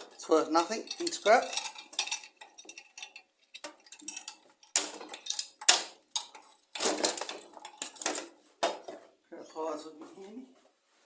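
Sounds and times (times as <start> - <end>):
metal parts and tools clinking: 0.0 - 8.3.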